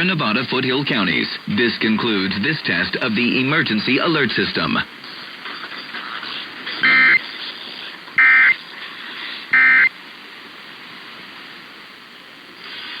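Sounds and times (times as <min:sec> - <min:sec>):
faint radio hiss: 0:00.0 - 0:13.0
harsh buzzing data bursts: 0:06.8 - 0:07.2, 0:08.2 - 0:08.6, 0:09.6 - 0:09.9.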